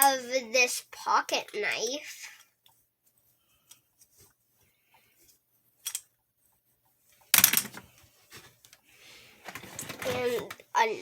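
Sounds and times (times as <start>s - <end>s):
rustling: 2.2s - 10.7s
toy weapons clattering: 7.4s - 7.8s.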